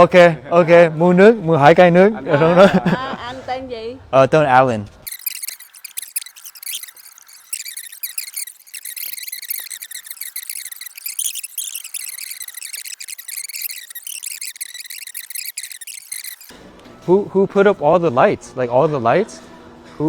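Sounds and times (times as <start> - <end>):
night insects chirping: 5.1 - 16.5.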